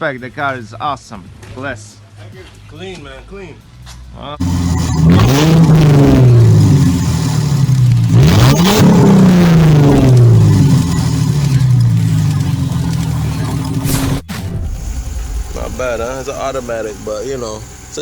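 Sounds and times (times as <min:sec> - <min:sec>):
car engine revving: 0:04.4 - 0:18.0.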